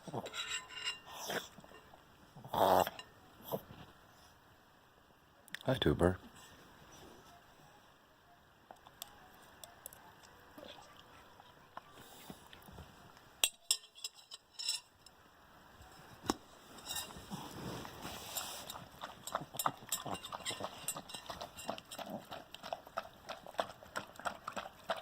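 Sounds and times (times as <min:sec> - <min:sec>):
dog eating food: 0:17.2 - 0:25.0.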